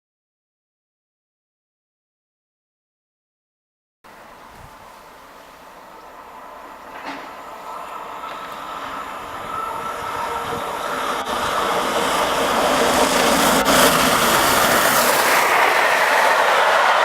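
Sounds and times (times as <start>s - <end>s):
steam train rushing past: 4.1s - 17.0s.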